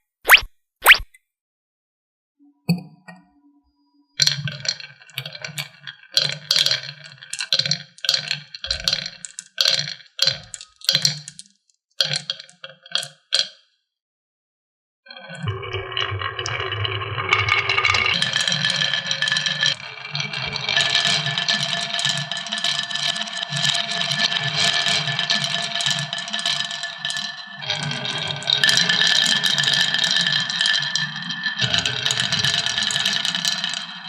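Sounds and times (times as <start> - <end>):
marbles rolling on plastic track: 4.2 - 13.6, 15.2 - 34.0.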